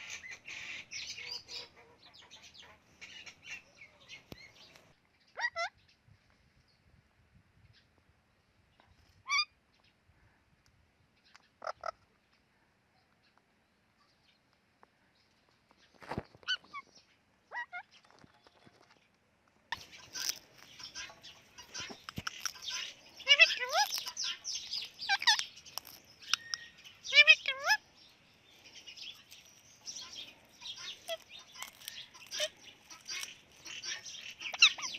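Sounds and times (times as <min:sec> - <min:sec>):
parrot calls: 0:05.4 - 0:05.7, 0:19.8 - 0:27.9, 0:28.9 - 0:34.9.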